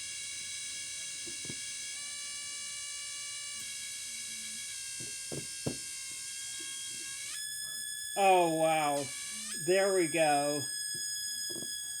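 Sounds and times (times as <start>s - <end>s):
buzzy electronic synthesizer tone: 8.2s - 10.7s.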